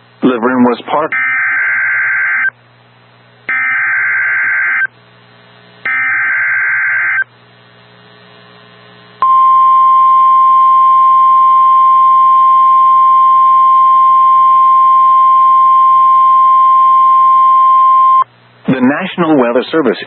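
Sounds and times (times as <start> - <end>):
steady warning alarm tone: 1.1 - 2.6, 3.5 - 4.9, 5.9 - 7.3, 9.2 - 18.2.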